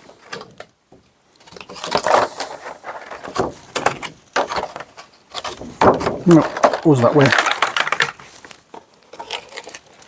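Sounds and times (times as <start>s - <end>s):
game pieces knocking and clicking: 5.5s - 8.3s
packaging rustling: 6.2s - 10.0s.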